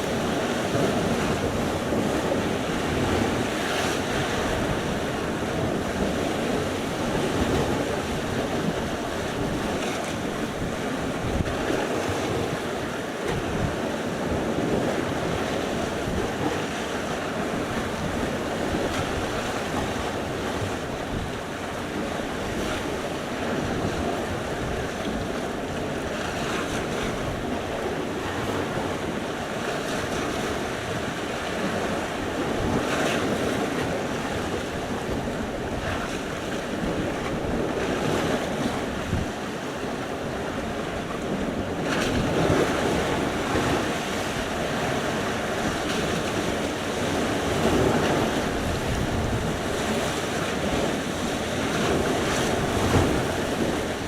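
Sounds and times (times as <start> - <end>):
waves breaking ashore: 0.0 - 54.0.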